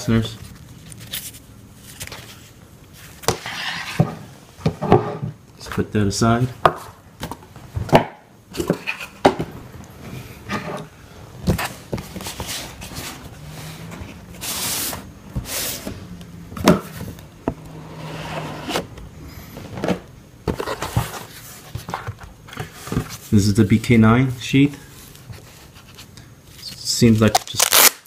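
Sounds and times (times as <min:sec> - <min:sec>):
cardboard and wrapping rustling: 0:00.0 - 0:04.0, 0:11.4 - 0:16.1, 0:18.3 - 0:23.6.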